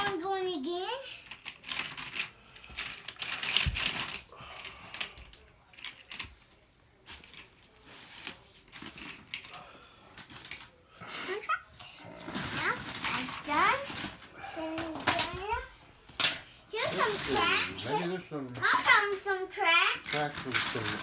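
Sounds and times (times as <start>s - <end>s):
plastic toy train track clicking: 1.0s - 6.3s, 18.6s - 19.1s, 20.0s - 21.0s.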